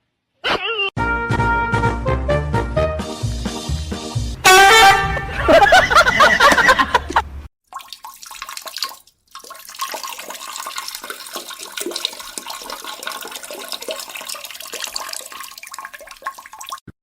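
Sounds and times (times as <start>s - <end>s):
water running and splashing: 7.6s - 17.0s.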